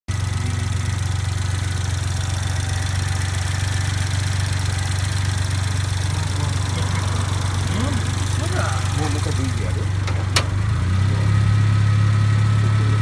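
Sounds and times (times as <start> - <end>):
car engine idling: 0.1 - 13.0
wiring knocking: 6.1 - 10.8.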